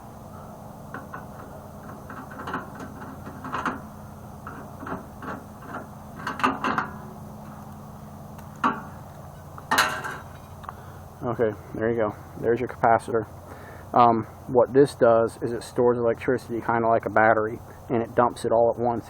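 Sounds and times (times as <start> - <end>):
steady low hum: 0.0 - 19.0
hand tool metal clicks and scrapes: 0.9 - 7.7.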